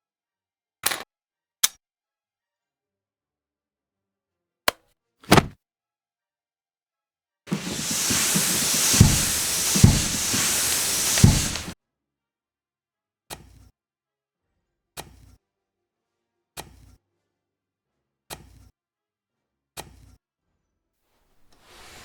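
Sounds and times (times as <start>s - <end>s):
low thuds: 7.5s - 11.8s
steady hissing rush: 7.5s - 11.8s.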